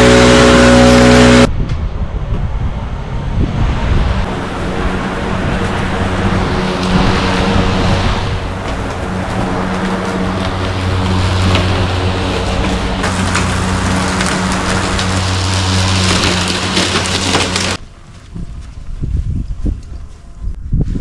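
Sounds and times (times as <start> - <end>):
lawn power equipment running: 0.0 - 1.5, 4.3 - 17.8
low machine drone: 0.0 - 18.9.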